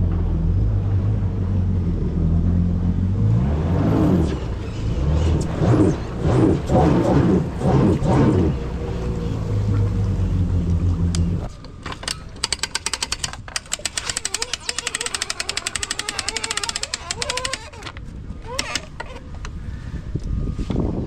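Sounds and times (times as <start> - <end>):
low motor hum: 0.0 - 21.0
fishing reel clicking: 12.1 - 19.0.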